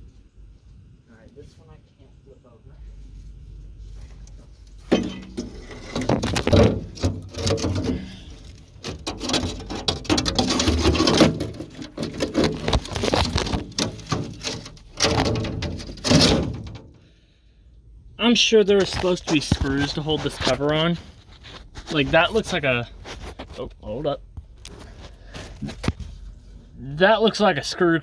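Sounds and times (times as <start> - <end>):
loose cover panel knocking and rattling: 4.9 - 17.0.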